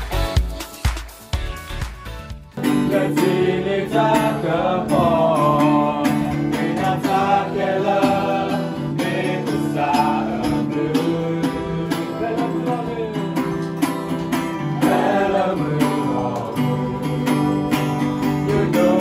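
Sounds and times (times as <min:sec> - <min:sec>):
steady beat: 0:00.0 - 0:04.4
guitar: 0:00.0 - 0:19.0
person singing: 0:02.7 - 0:19.0.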